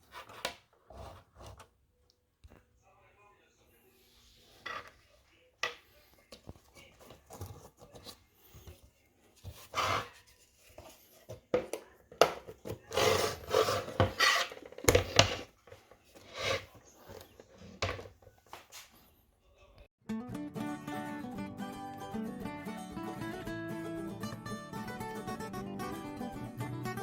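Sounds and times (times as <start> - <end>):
rubbing and scraping noises: 5.9 - 19.1.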